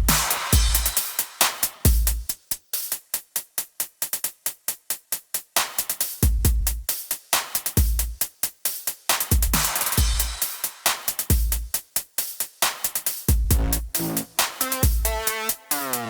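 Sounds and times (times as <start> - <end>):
deep bass hits: 13.5 - 15.2
electronic dance music: 13.5 - 16.0.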